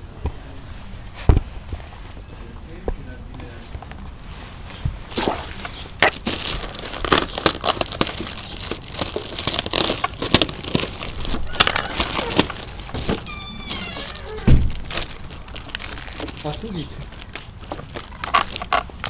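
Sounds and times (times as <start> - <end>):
crinkling and rustling of handling: 0.2 - 19.0
heavy thump: 14.4 - 14.8.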